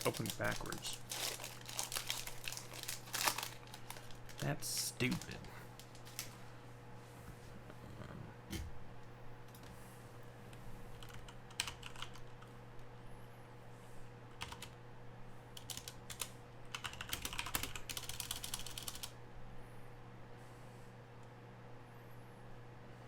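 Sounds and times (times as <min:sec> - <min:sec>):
typing on computer keyboard: 0:11.0 - 0:12.4, 0:14.4 - 0:14.8, 0:15.6 - 0:19.2.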